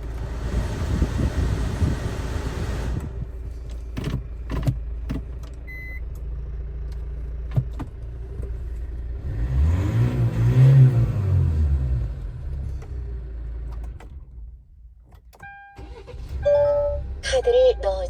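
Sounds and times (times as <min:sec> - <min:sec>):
car engine idling and revving: 0:00.0 - 0:18.0
short beep: 0:15.4 - 0:18.0.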